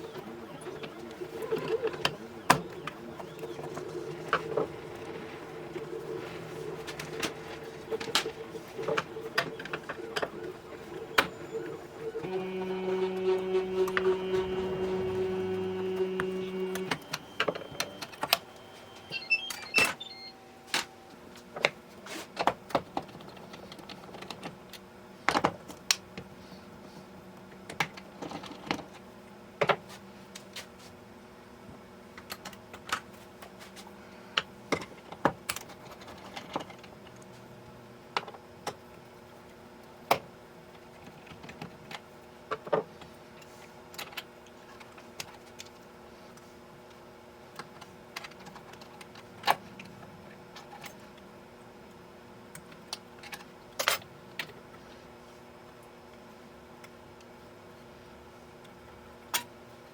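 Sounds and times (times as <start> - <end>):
steady tone: 10.4 - 19.5.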